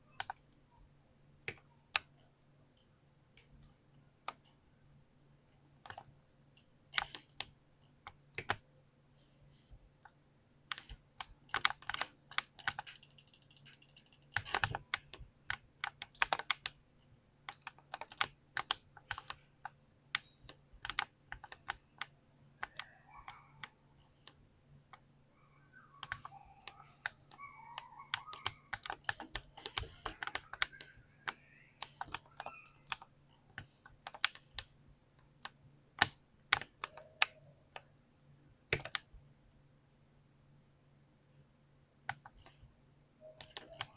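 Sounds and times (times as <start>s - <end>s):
mechanical keyboard typing: 7.0s - 7.3s, 10.7s - 16.8s, 17.5s - 19.3s, 20.1s - 22.1s, 27.7s - 30.9s, 43.4s - 43.9s.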